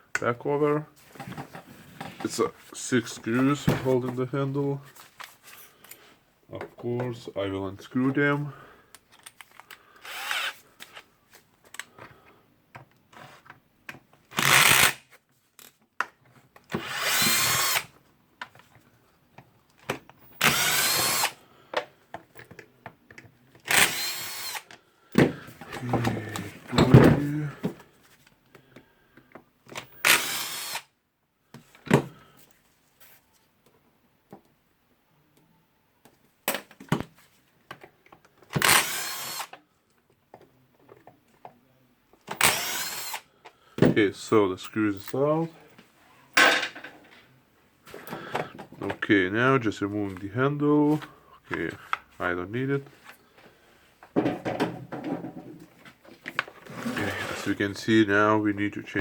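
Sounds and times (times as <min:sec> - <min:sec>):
small clicks and handling noise: 0:08.9 - 0:09.8, 0:10.8 - 0:14.2
power drill whirring: 0:10.0 - 0:10.7, 0:14.3 - 0:15.0, 0:16.7 - 0:17.9, 0:20.4 - 0:21.4, 0:23.6 - 0:24.7, 0:29.9 - 0:30.9, 0:38.6 - 0:39.6, 0:42.3 - 0:43.3.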